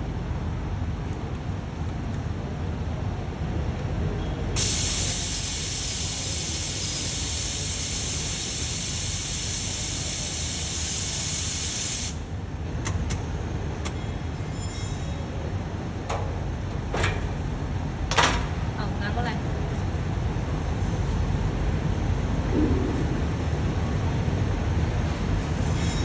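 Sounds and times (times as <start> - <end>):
welding gas hissing: 4.6 - 12.3
low machine hum: 12.1 - 26.0.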